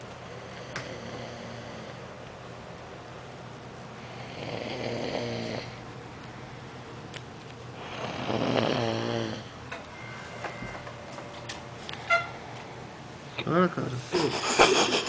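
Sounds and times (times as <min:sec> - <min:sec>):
loud snoring: 0:00.4 - 0:02.0, 0:04.1 - 0:05.8, 0:07.8 - 0:09.5.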